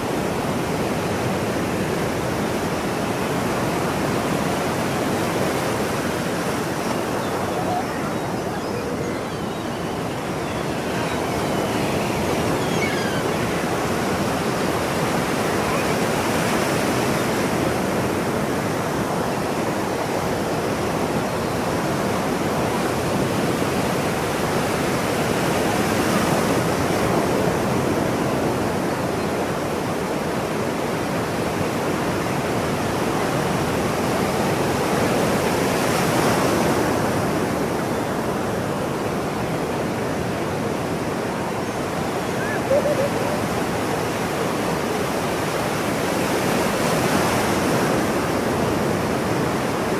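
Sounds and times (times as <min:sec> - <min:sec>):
ocean surf washing: 0:00.0 - 0:49.9.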